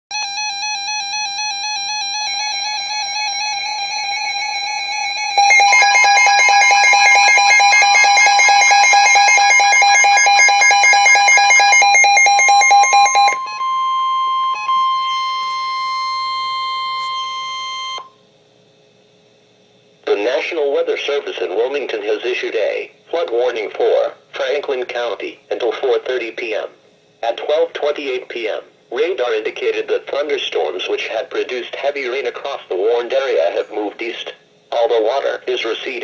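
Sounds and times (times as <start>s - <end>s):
rapidly pulsing alarm: 0.1s - 18.2s
warbling electronic tone: 3.6s - 13.6s.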